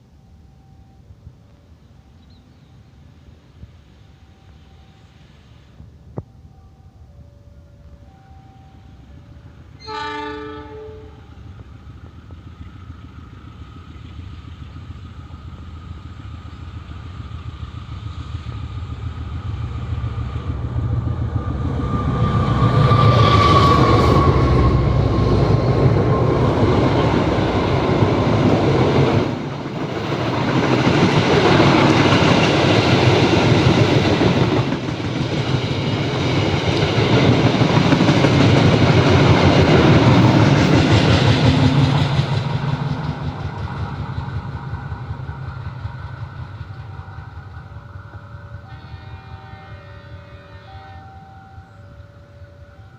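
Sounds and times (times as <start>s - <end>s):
train passing with rumble: 0.0s - 52.9s
train horn: 6.5s - 11.6s, 21.4s - 27.1s, 48.0s - 52.9s
wheels clattering on rails: 22.0s - 49.0s.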